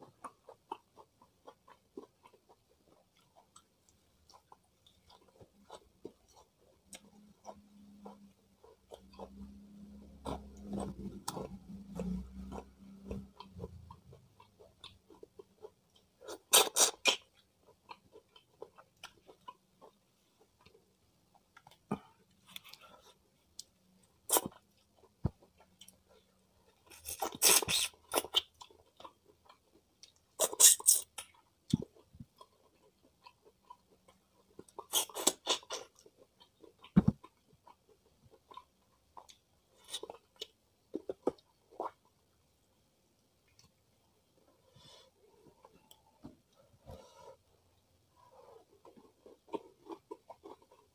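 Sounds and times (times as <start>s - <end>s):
crunchy food chewing: 0.0s - 20.8s, 45.3s - 50.9s.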